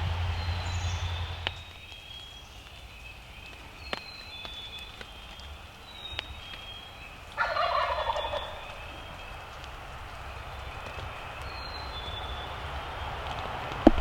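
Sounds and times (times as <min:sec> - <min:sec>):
turkey gobbling: 0:07.2 - 0:10.4.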